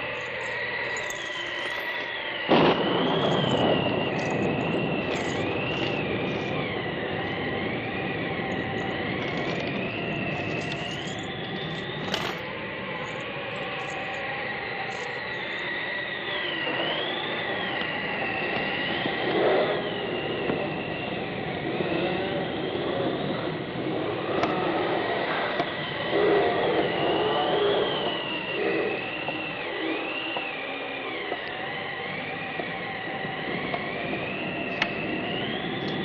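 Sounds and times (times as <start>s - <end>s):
high wavering whistling tones: 0.0s - 36.0s
loud crash: 2.5s - 10.0s.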